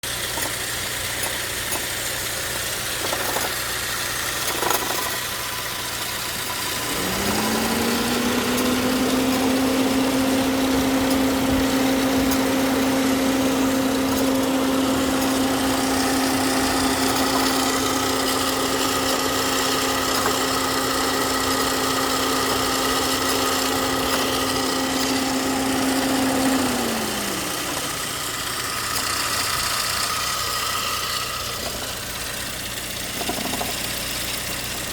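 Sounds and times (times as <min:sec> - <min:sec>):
machine hum: 0:06.2 - 0:33.8.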